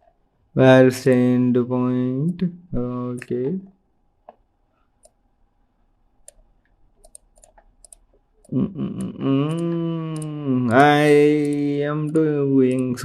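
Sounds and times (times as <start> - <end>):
computer mouse clicks: 4.2 - 5.2, 6.2 - 13.0
man humming: 8.5 - 13.0.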